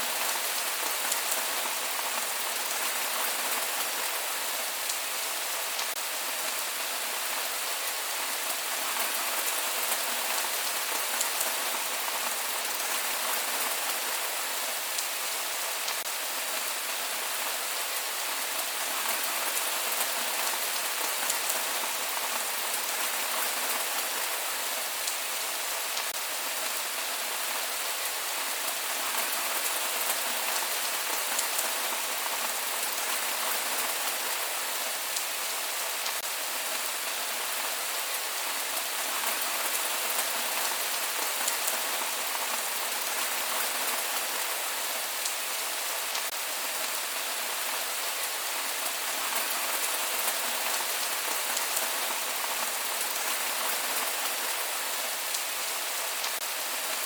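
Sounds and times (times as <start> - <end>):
rain pattering on a surface: 0.0 - 57.0.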